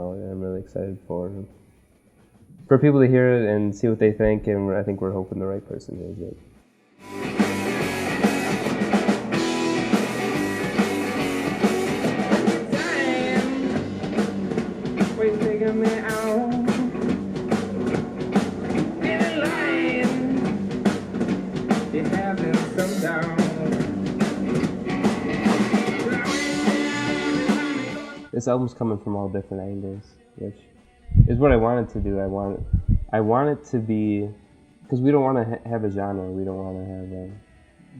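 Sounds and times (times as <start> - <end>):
rock band playing: 7.0 - 28.3
person singing: 12.5 - 14.0, 15.2 - 17.1, 19.0 - 20.6, 21.9 - 24.0, 25.7 - 33.5.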